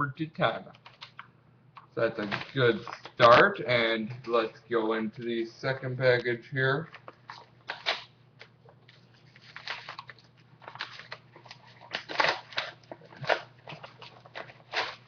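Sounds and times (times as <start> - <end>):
wrapping crinkling and tearing: 2.0 - 3.5, 6.9 - 15.0.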